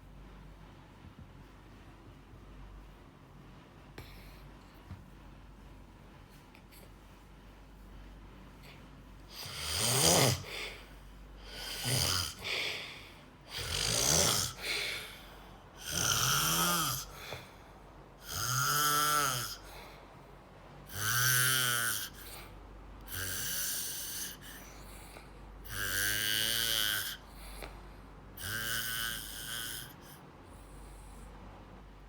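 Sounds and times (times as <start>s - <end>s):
person snoring: 9.3s - 17.6s, 18.2s - 20.0s, 20.9s - 22.5s, 23.1s - 27.8s, 28.4s - 30.2s.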